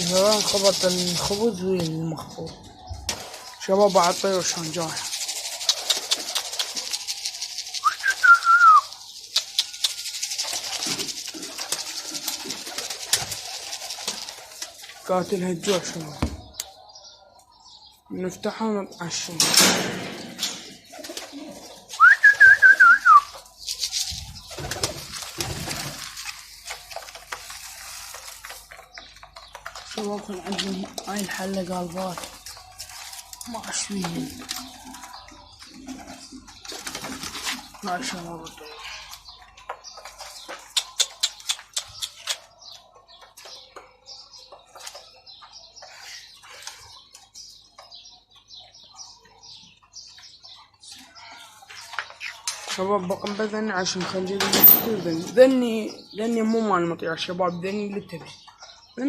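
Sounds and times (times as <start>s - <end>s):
pigeon chirps: 0.0s - 14.7s, 19.8s - 29.7s, 30.5s - 53.4s
pigeons cooing: 0.0s - 15.0s, 20.2s - 27.5s.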